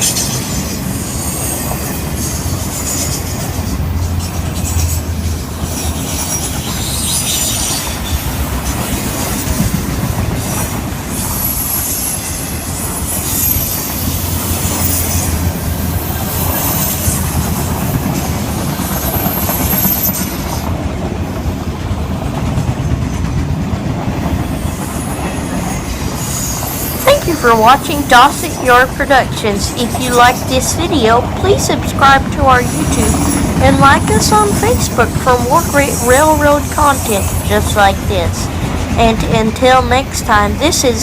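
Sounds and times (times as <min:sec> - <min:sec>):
wheel flange squeal: 0:00.0 - 0:08.3
train cars rumbling past: 0:00.0 - 0:41.0.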